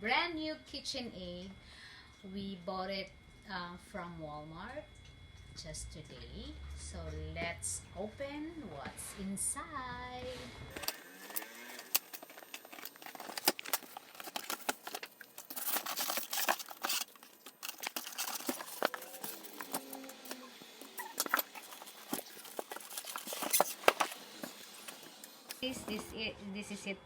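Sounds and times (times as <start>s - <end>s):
cardboard packaging rustling: 10.7s - 26.1s.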